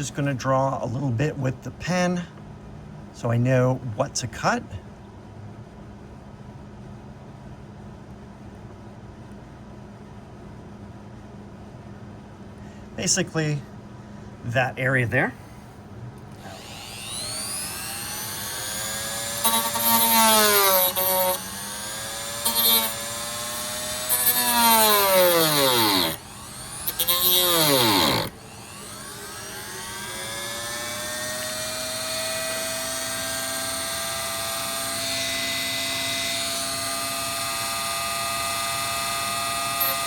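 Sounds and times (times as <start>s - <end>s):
rotary tool whining: 16.3s - 40.0s.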